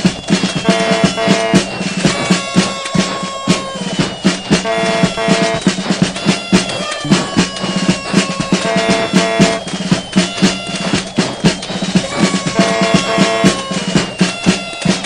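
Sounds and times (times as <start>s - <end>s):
music with driving drum beat: 0.0s - 15.0s.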